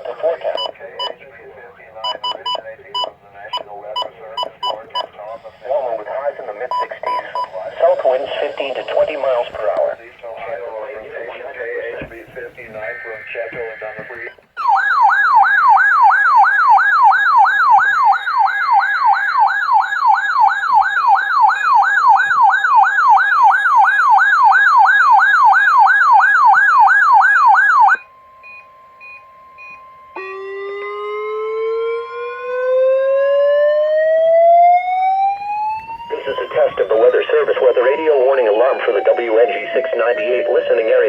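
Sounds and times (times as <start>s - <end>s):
electronic siren wailing rapidly: 12.8s - 28.0s, 29.8s - 41.0s
siren winding up: 29.4s - 41.0s.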